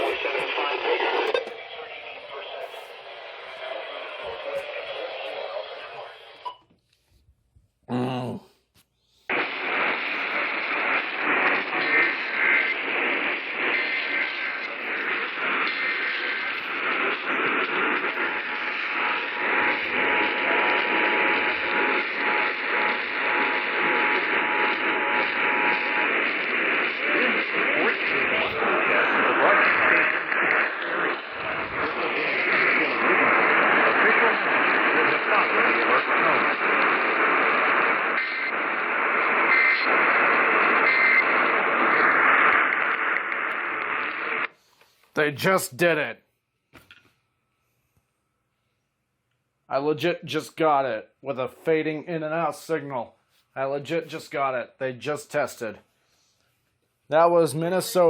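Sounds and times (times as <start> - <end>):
radio static: 0.0 - 6.6, 9.3 - 46.1, 57.1 - 58.0.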